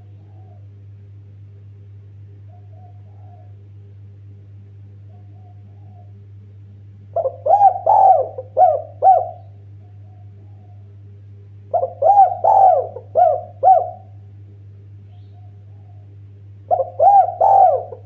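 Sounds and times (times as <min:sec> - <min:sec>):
dove cooing: 0:00.0 - 0:00.8, 0:02.4 - 0:03.7, 0:05.0 - 0:06.3, 0:07.1 - 0:11.0, 0:11.7 - 0:14.3, 0:15.1 - 0:18.0
steady low hum: 0:00.0 - 0:18.0.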